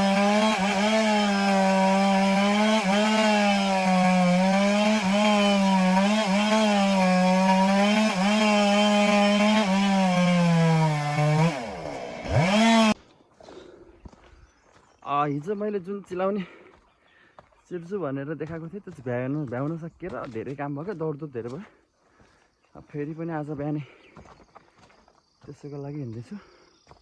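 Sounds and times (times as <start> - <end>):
chainsaw cutting log: 0.0 - 13.0.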